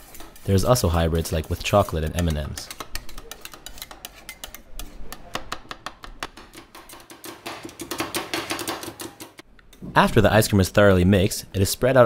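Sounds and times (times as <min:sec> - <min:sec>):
metal spatulas clacking on steel: 0:01.3 - 0:05.5.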